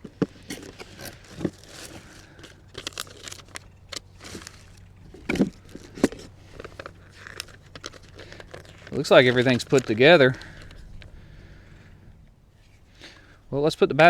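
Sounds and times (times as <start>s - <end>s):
packaging rustling and crinkling: 0.0s - 11.2s.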